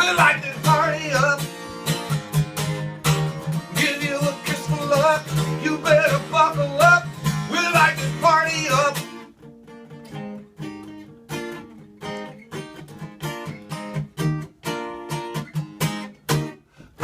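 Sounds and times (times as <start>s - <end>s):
acoustic guitar strumming chords: 0.0s - 17.0s.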